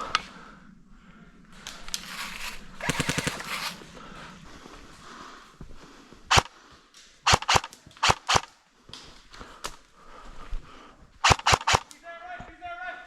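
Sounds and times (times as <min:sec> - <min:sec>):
airsoft gun shots: 0:02.8 - 0:03.7, 0:07.3 - 0:08.5, 0:11.2 - 0:11.9.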